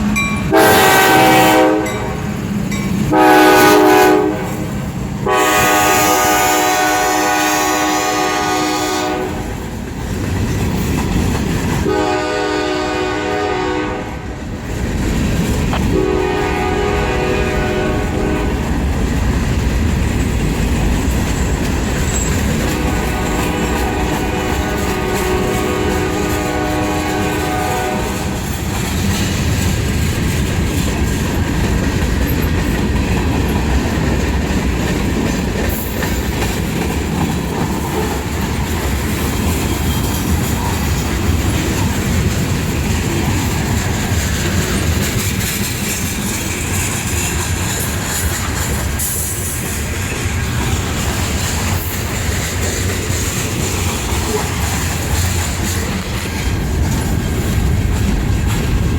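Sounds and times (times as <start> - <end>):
locomotive chime horn: 0.0 - 2.4, 3.1 - 9.4, 11.8 - 14.2, 15.9 - 18.6, 22.7 - 28.4
freight train rumble: 0.0 - 58.9.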